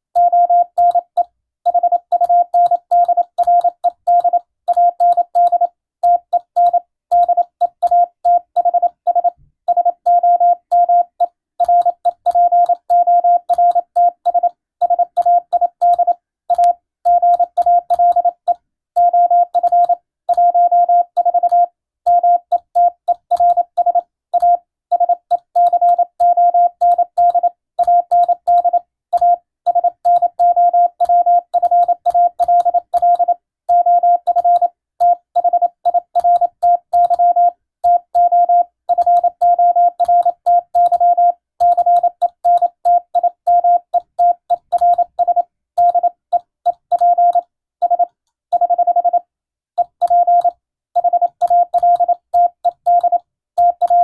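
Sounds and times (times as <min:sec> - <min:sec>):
morse code beeps: 0:00.2 - 0:49.2, 0:49.8 - 0:54.0.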